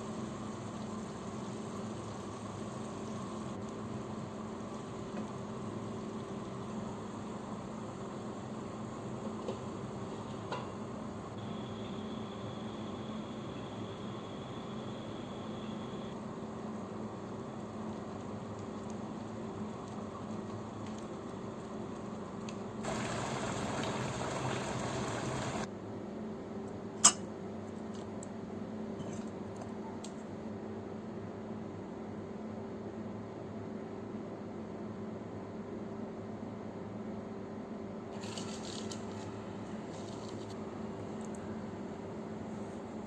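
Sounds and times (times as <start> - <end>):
faint hiss: 22.8 - 25.7
liquid pouring: 22.9 - 25.7.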